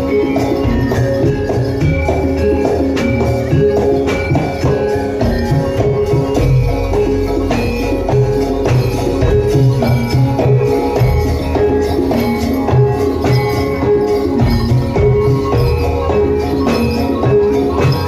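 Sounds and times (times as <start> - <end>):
bronze mallet notes repeating: 0.0 - 18.0.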